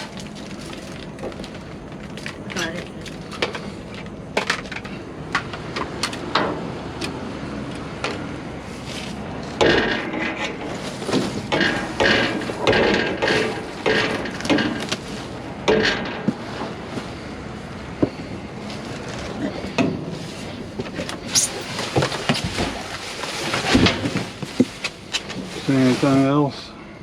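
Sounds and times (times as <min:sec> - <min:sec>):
objects knocking and clattering: 0:00.0 - 0:06.7, 0:09.6 - 0:16.8, 0:19.0 - 0:25.6.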